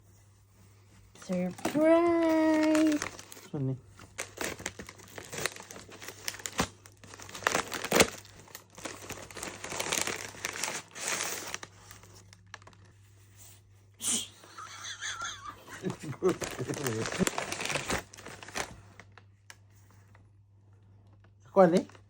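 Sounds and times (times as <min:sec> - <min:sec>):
gift packaging crinkling and tearing: 0:01.2 - 0:13.0, 0:15.7 - 0:19.3, 0:21.6 - 0:22.0.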